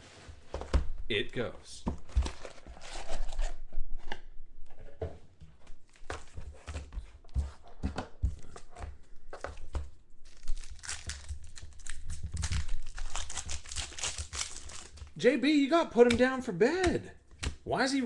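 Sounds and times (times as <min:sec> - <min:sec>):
packaging torn and crinkled: 0:10.2 - 0:15.2.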